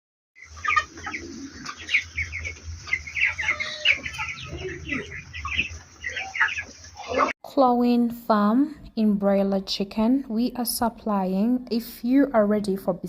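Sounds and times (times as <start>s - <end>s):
chickens peeping and clucking: 0.4s - 7.4s.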